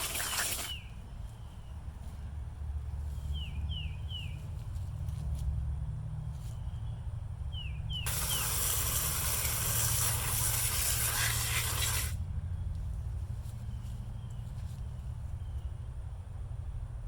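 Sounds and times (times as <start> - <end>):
bird chirping: 3.1 - 4.5, 6.6 - 9.6
cleaning spray hissing: 8.1 - 12.2.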